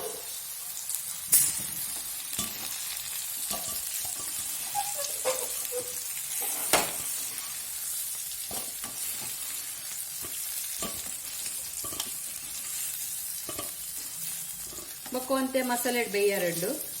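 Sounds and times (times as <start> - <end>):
okra sizzling in hot oil: 0.0 - 17.0
spatula scraping and knocking pan: 1.6 - 5.6, 6.3 - 7.6, 8.4 - 15.2.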